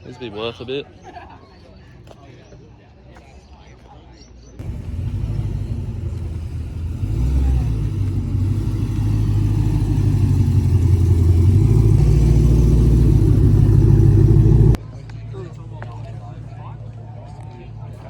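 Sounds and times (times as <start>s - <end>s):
car engine rumbling: 4.6s - 14.8s.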